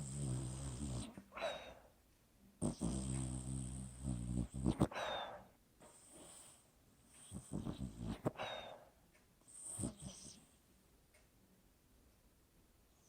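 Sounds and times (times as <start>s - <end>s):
dog snoring: 0.0s - 1.5s, 2.6s - 8.7s, 9.4s - 10.6s.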